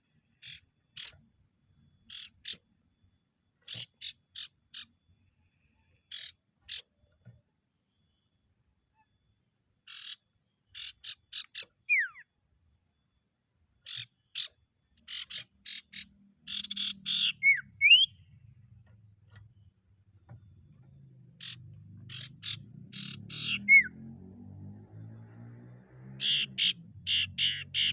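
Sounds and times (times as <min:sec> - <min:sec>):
bird rasping chattering calls: 0:00.4 - 0:01.2, 0:02.1 - 0:02.6, 0:03.7 - 0:05.0, 0:09.9 - 0:12.2, 0:13.8 - 0:18.2, 0:21.4 - 0:24.0, 0:26.2 - 0:27.9
bird slurred whistles: 0:11.9 - 0:12.2, 0:16.7 - 0:18.1, 0:23.0 - 0:23.9.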